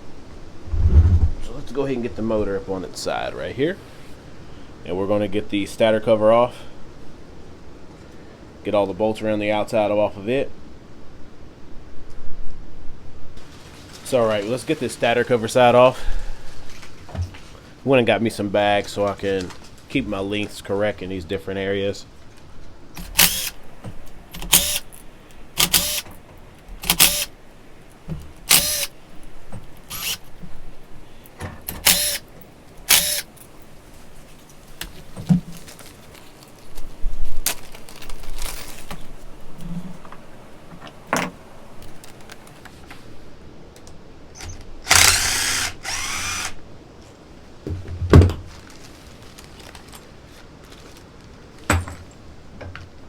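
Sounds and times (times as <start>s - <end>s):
power driver bursts: 23.0s - 23.6s, 24.3s - 25.0s, 25.6s - 26.1s, 26.8s - 27.3s, 28.4s - 29.0s, 29.9s - 30.3s, 31.7s - 32.3s, 32.9s - 33.3s, 44.9s - 46.6s.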